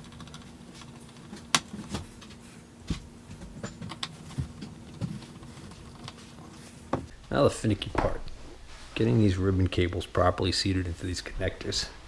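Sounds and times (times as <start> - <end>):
hands handling circuit boards: 0.0 - 7.1
steady low hum: 0.0 - 7.2.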